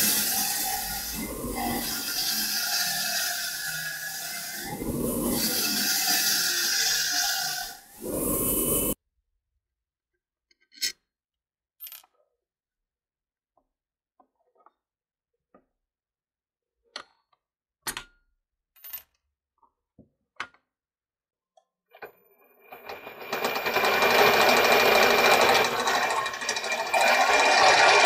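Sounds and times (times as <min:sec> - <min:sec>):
machine rattling: 0:22.6 - 0:28.0.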